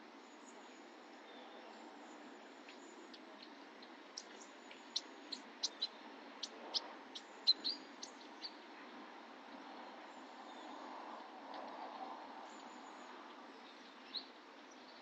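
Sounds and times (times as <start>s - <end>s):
low background noise: 0.0s - 15.0s
songbirds chirping: 0.0s - 15.0s.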